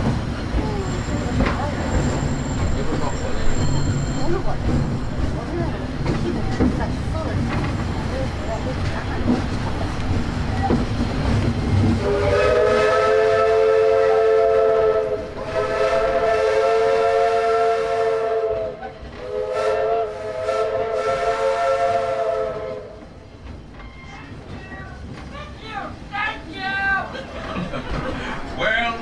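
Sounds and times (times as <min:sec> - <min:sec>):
train rumble: 0:00.0 - 0:29.0
steam locomotive chime whistle: 0:00.8 - 0:05.0, 0:12.0 - 0:22.9.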